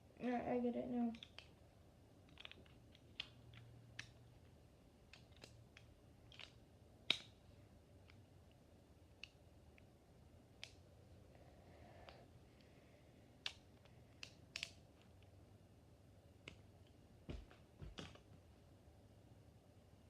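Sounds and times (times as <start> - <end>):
small plastic parts clicking: 1.1 - 1.6, 2.2 - 7.4, 8.0 - 9.9, 10.6 - 10.8, 13.4 - 15.4
plastic snap: 5.1 - 7.4.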